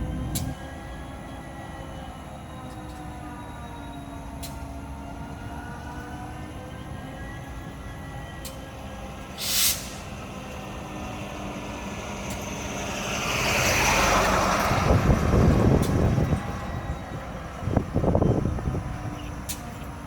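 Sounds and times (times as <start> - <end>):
diesel locomotive humming: 0.0 - 20.0
air hiss burst: 9.4 - 10.2.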